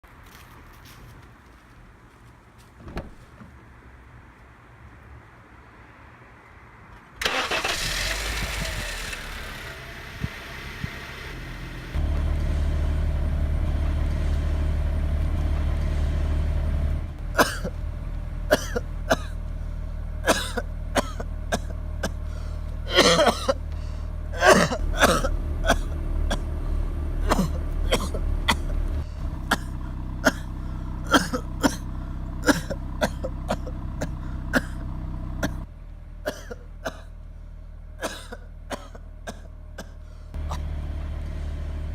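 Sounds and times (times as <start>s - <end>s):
car engine starting and idling: 7.2s - 41.9s
person coughing: 17.4s - 17.7s, 18.5s - 19.4s, 20.3s - 22.2s, 22.9s - 23.6s, 24.4s - 26.4s, 27.2s - 28.7s, 29.5s - 34.8s, 36.3s - 37.1s, 38.0s - 40.0s.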